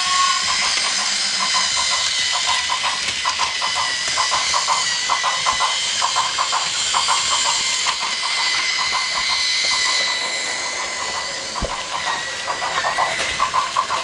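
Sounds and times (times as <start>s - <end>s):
toy train motor whining: 0.0s - 14.0s.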